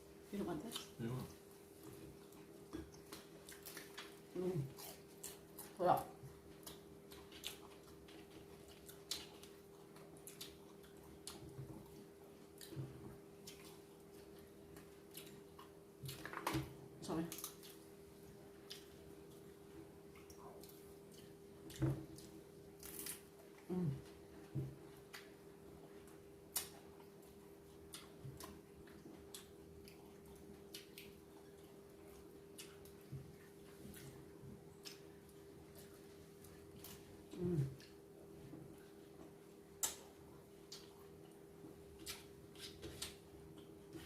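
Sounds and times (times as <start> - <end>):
steady low hum: 0.0 - 44.0
people chewing crunchy food: 0.6 - 16.7, 17.3 - 44.0
chewing clicks and smacks: 6.5 - 12.0, 27.9 - 33.1, 39.8 - 41.4.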